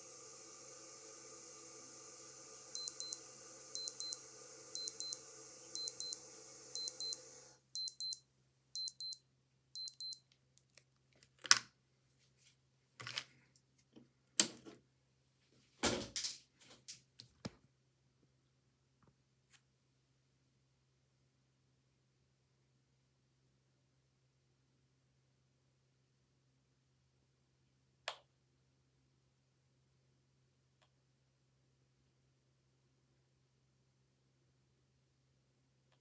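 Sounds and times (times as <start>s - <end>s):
steady hiss: 0.0s - 6.7s
digital watch alarm double beep: 2.8s - 3.2s, 3.8s - 4.2s, 4.8s - 5.2s, 5.8s - 6.2s, 6.8s - 7.2s, 7.8s - 8.2s, 8.8s - 9.2s, 9.8s - 10.2s.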